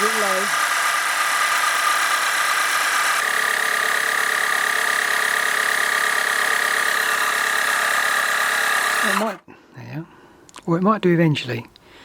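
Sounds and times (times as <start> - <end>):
electric compressor buzzing whine: 0.0 - 9.4.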